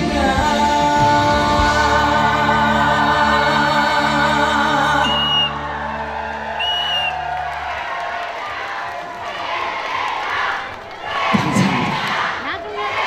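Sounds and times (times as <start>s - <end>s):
backing track music: 0.0s - 7.6s.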